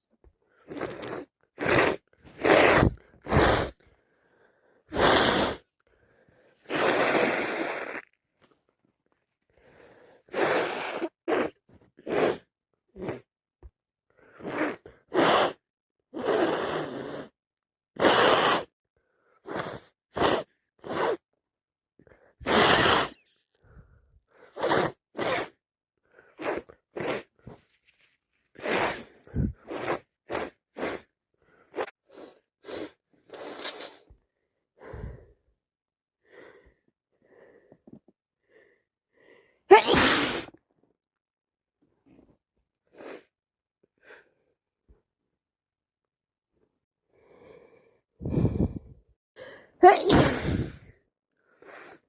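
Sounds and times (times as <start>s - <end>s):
catching breaths and sniffs: 0.0s - 8.1s, 22.0s - 35.4s, 47.3s - 52.0s
person sneezing wetly: 39.7s - 40.6s, 49.8s - 50.8s.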